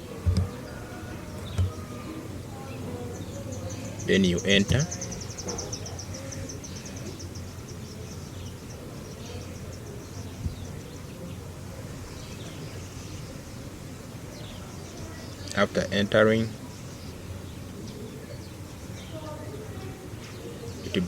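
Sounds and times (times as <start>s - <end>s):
soft knock: 0.2s - 0.6s.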